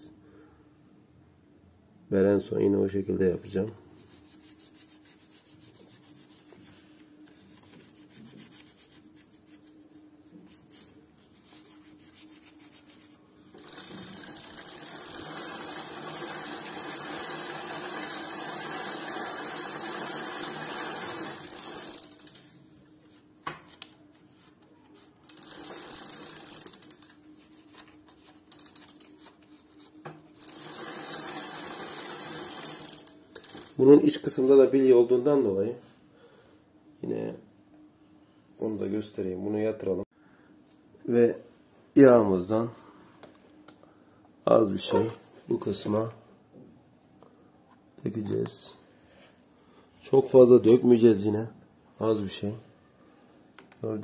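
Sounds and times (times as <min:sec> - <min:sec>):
faint handling noises: 0:27.0 - 0:30.4.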